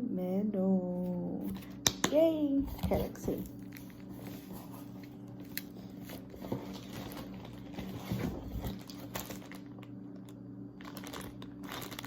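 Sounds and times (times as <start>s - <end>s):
steady low hum: 0.0s - 12.0s
packaging clicks and rustles: 2.8s - 12.0s.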